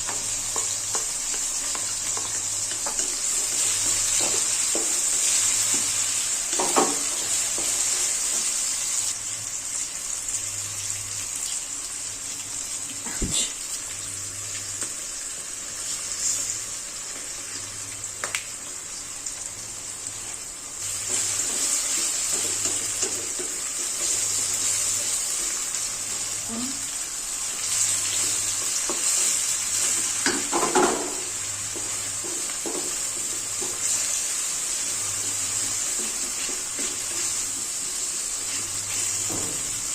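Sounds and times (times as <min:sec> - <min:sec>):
food sizzling in a frying pan: 0:00.0 - 0:39.9.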